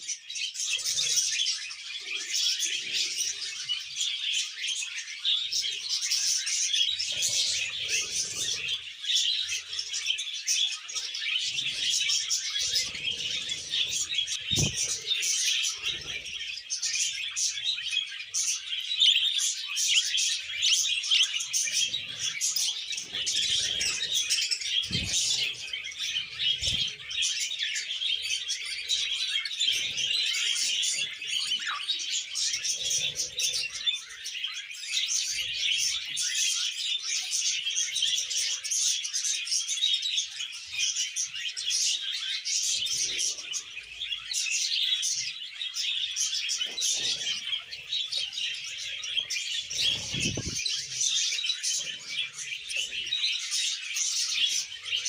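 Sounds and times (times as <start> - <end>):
parrots chattering and chirping: 0.0 - 55.0.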